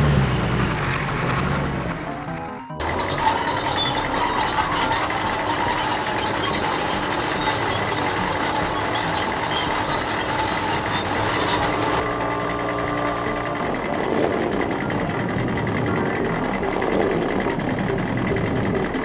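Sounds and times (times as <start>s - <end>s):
heavy vehicle running: 0.0s - 19.0s
high metallic squeaks: 2.7s - 19.0s.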